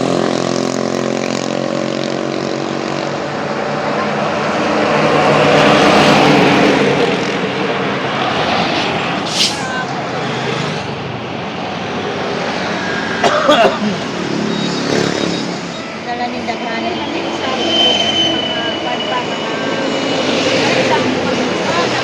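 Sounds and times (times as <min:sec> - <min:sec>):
road noise of passing vehicle: 0:00.0 - 0:22.0
short hiss: 0:09.2 - 0:09.9.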